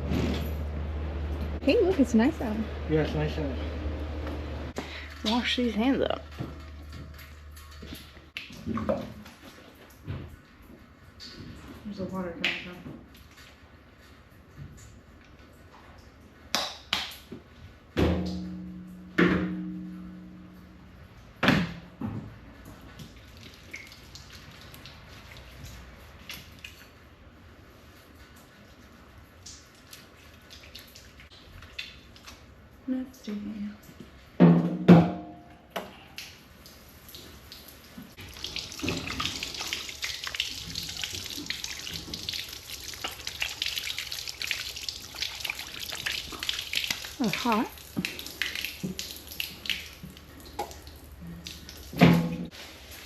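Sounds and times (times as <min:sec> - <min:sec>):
tap water running: 0:36.2 - 0:53.0.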